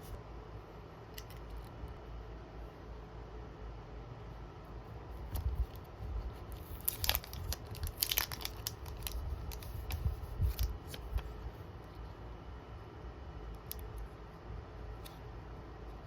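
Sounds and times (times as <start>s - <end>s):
packaging crinkling and tearing: 6.5s - 11.3s.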